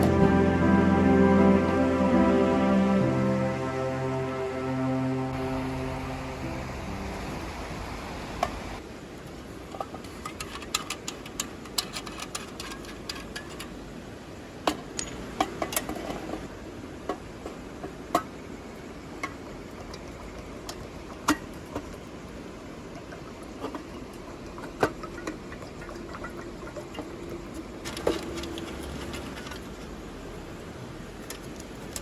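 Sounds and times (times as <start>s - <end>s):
low rushing background: 0.0s - 8.8s.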